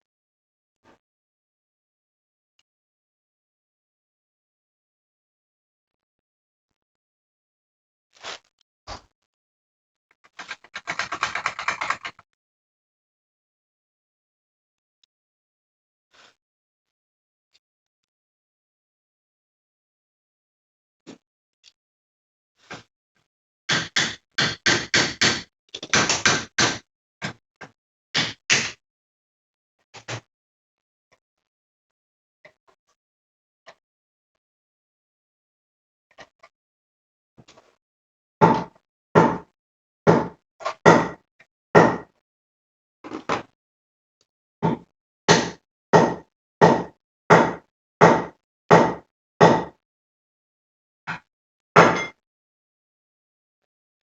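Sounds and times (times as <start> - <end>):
sharp knocks on metal: 23.7 - 26.8, 28.2 - 28.8, 40.1 - 41.2, 41.8 - 42.1, 44.7 - 49.7, 51.8 - 52.2
hammer striking metal: 51.8 - 52.2.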